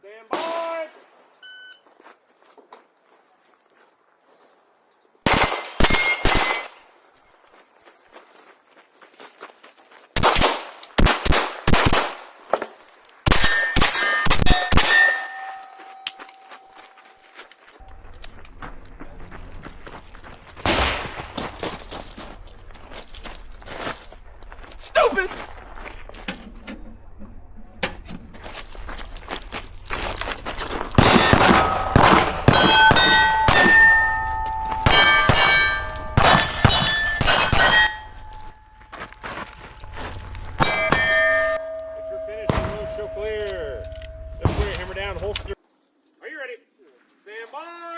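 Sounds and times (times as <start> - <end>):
rapid pistol shots: 5.3 - 6.7, 10.2 - 12.4, 31.0 - 34.2
pistol shots: 5.3 - 6.8, 10.2 - 12.4, 13.3 - 15.6, 20.6 - 21.6, 30.9 - 38.4
steel plates clanging: 5.3 - 7.0, 13.2 - 17.9, 27.8 - 45.6
metallic ringing tone: 13.3 - 18.2, 30.7 - 45.6.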